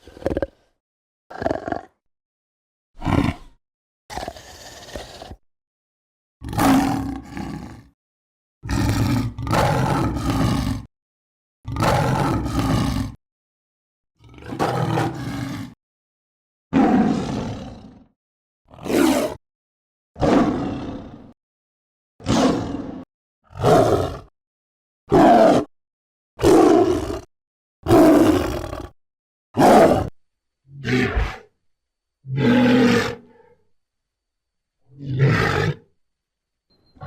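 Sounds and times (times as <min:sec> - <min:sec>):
creature growls and roars: 0:00.0 - 0:00.7, 0:01.3 - 0:02.0, 0:03.0 - 0:05.4, 0:06.4 - 0:08.0, 0:08.6 - 0:10.9, 0:11.7 - 0:13.2, 0:14.2 - 0:15.8, 0:16.7 - 0:19.4, 0:20.2 - 0:21.4, 0:22.2 - 0:24.3, 0:25.1 - 0:25.7, 0:26.4 - 0:29.0, 0:29.6 - 0:31.5, 0:32.3 - 0:33.6, 0:34.9 - 0:35.9.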